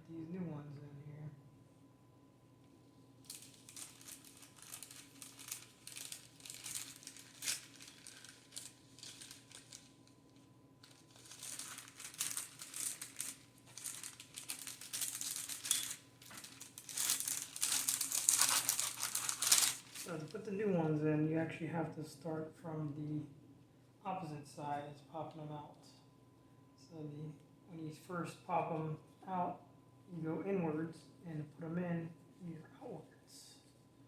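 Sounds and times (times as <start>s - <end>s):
plastic packaging crinkling: 3.2s - 20.4s.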